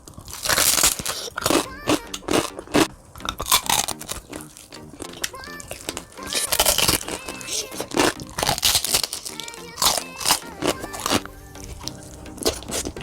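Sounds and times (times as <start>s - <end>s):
crunchy chewing: 0.0s - 13.0s.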